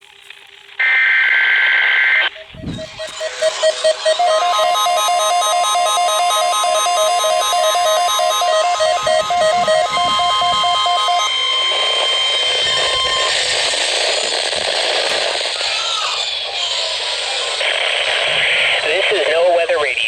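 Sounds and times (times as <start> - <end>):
radio static hiss: 0.7 - 4.9, 8.2 - 20.0
steady alarm tone: 1.8 - 19.3
two-note warbling electronic alarm: 2.3 - 15.6.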